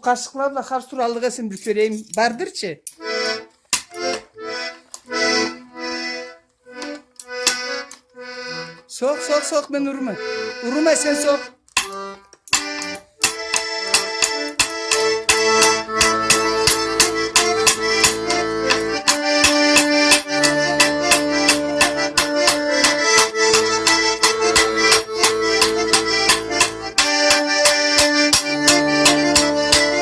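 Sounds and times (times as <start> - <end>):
accordion folk dance tune: 3.0 - 30.0
spoons clicking in rhythm: 11.7 - 30.0.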